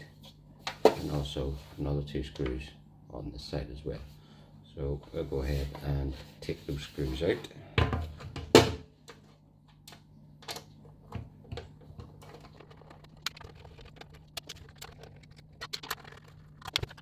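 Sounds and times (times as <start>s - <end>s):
faint low hum: 0.0s - 14.1s.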